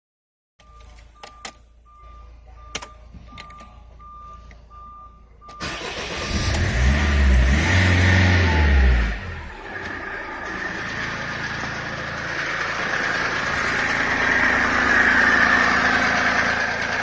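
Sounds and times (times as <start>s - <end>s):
dashboard warning chime beeping: 0.6s - 6.1s
diesel engine cranking and running: 2.6s - 17.0s.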